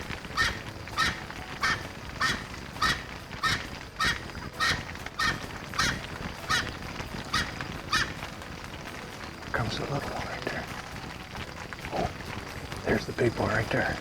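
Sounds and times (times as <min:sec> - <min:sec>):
francolin cackling call: 0:00.0 - 0:08.6.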